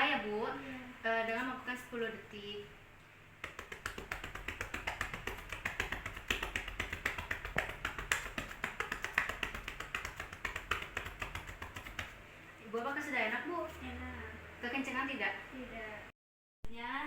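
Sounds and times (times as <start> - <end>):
rapid hand clapping on back: 3.4 - 12.2.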